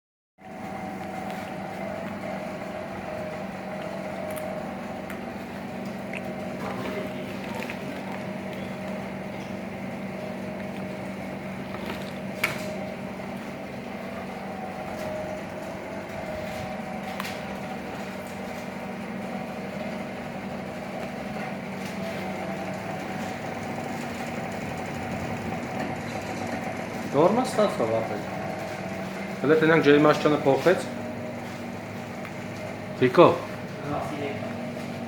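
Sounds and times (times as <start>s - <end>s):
refrigerator compressor humming: 0.4s - 35.0s.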